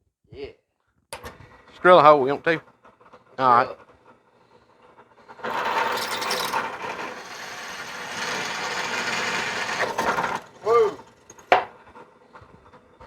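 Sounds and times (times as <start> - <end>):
drill press drilling: 4.5 - 11.9.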